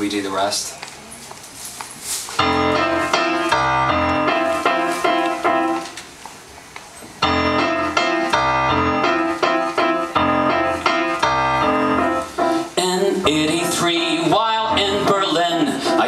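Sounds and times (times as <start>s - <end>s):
piano chords over bass line: 2.4s - 5.9s, 7.2s - 16.0s.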